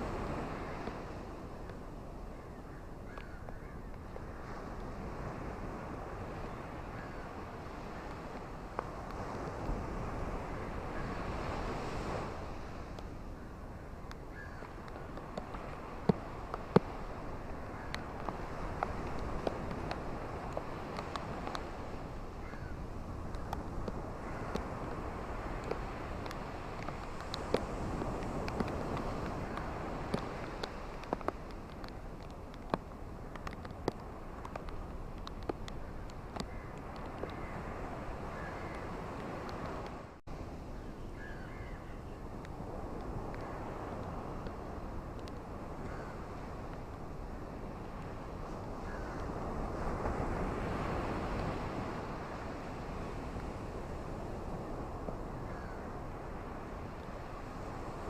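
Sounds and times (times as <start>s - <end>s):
ocean surf washing on beach: 0.0s - 58.0s
raindrops ticking close by: 25.5s - 37.5s.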